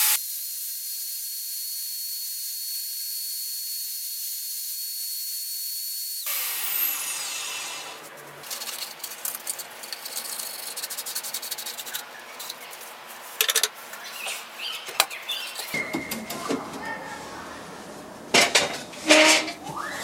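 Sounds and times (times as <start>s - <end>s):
tools clattering: 13.4s - 13.7s.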